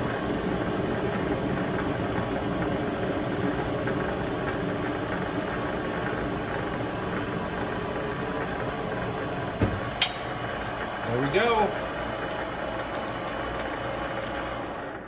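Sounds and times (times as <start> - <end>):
lathe humming with squeal: 0.0 - 14.9
knock: 9.6 - 9.9.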